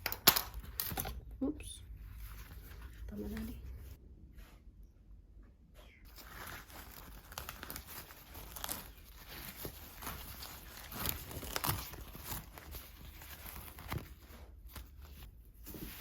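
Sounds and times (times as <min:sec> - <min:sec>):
crinkling and rustling: 0:01.9 - 0:04.6, 0:06.0 - 0:16.0.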